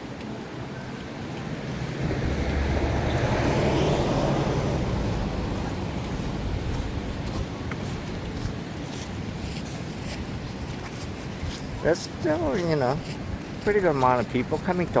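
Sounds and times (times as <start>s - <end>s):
vehicle passing by: 1.5s - 7.6s.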